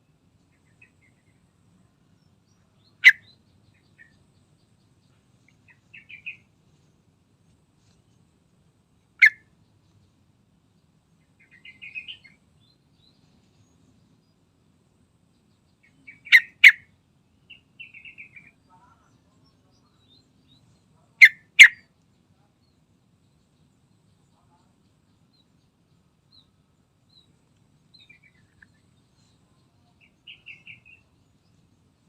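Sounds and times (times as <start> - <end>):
bird twittering: 2.8 - 4.2, 5.5 - 6.5, 9.2 - 9.5, 11.4 - 12.4, 15.8 - 16.9, 17.5 - 18.6, 21.2 - 21.8, 27.9 - 31.1.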